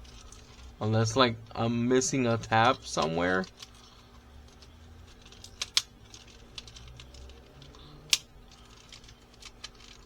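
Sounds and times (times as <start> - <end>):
plastic toy parts clicking: 4.5 - 10.0.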